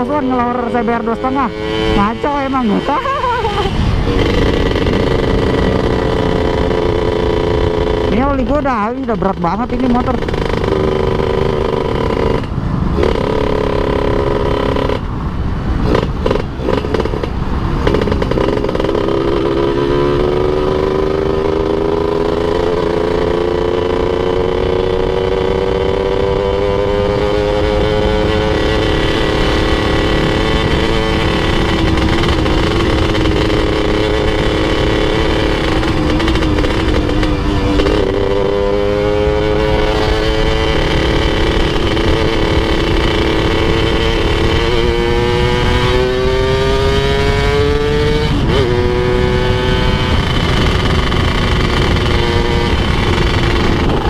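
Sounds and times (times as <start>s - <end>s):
rider talking: 0.0s - 3.7s, 8.1s - 10.5s
two-stroke motorcycle engine: 0.0s - 54.0s
wind and road rumble: 0.0s - 54.0s.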